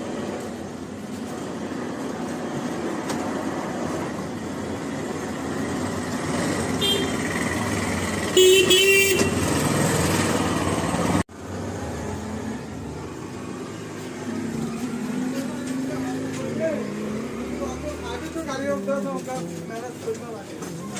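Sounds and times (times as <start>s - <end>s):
road traffic noise: 0.0s - 20.9s
vehicle horn honking: 6.8s - 7.3s, 8.3s - 9.5s.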